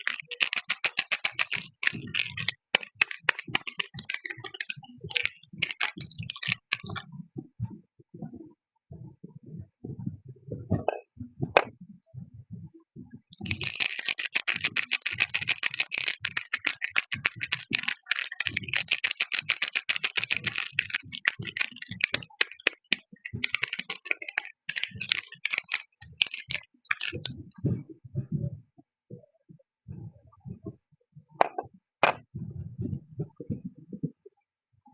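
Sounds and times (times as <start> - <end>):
soap packaging crinkling: 0.0 - 7.0, 13.4 - 27.4
handling taps and thumps: 31.4 - 33.6.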